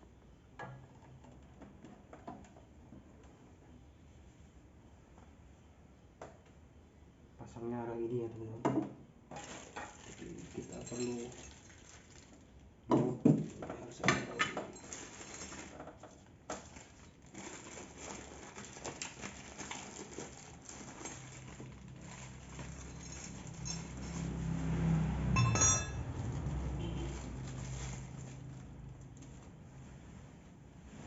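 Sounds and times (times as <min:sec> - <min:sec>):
metal parts clinking: 0:21.0 - 0:24.2.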